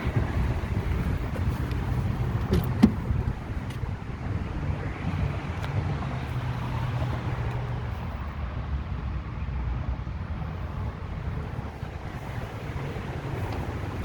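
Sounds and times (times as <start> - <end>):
truck engine idling: 0.0 - 8.0.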